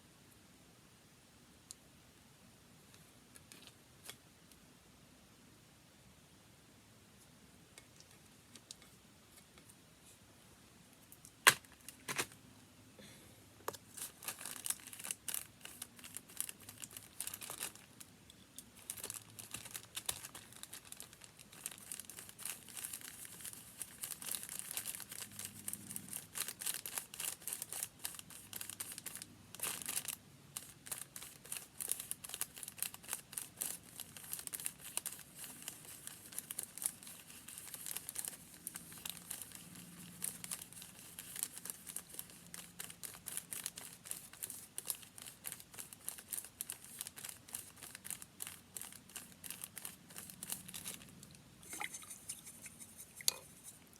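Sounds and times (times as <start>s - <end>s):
paper crinkling and rustling: 13.7s - 18.0s, 18.8s - 51.2s.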